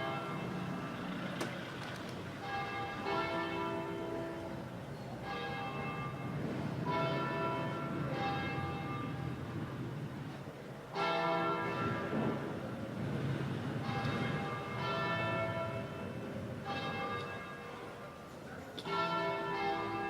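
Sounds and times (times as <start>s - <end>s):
bells ringing: 13.8s - 20.0s.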